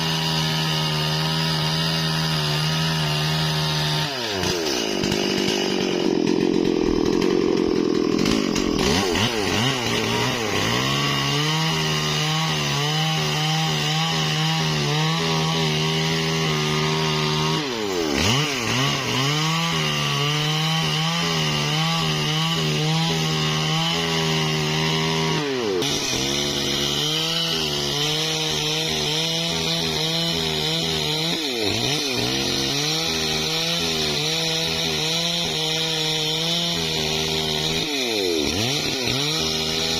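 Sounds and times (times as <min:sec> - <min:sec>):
chainsaw cutting tree trunk: 0:00.0 - 0:39.9.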